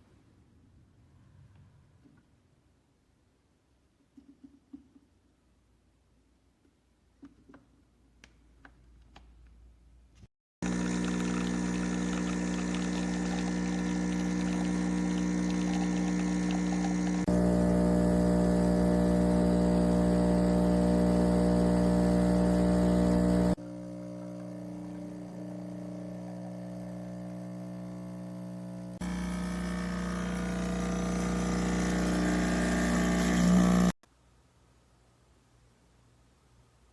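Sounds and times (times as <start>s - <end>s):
espresso machine pump humming: 10.6s - 34.0s.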